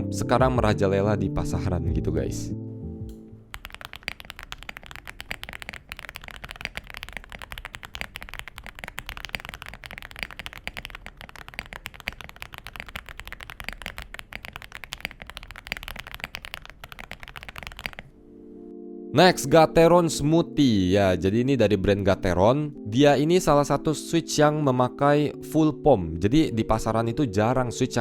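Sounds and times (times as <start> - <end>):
mechanical keyboard typing: 3.5 - 18.1.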